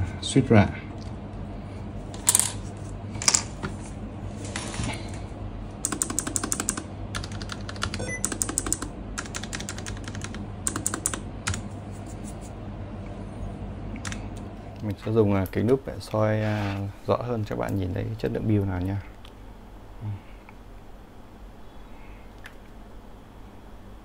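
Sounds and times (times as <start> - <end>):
keyboard keys clicking: 5.8 - 11.6.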